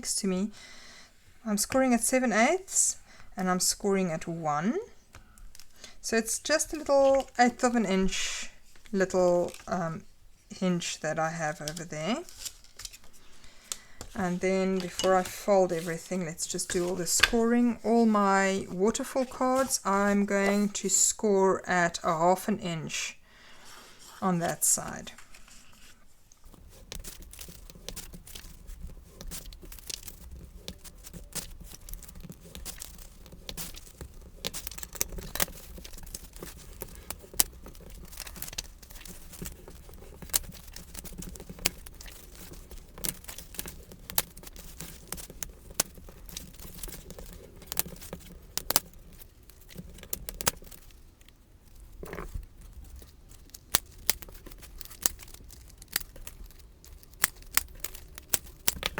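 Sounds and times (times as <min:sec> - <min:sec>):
paper rustling: 0:05.5 - 0:10.1, 0:11.3 - 0:20.8, 0:23.9 - 0:58.9
bone folder scraping cardstock: 0:25.3 - 0:51.1.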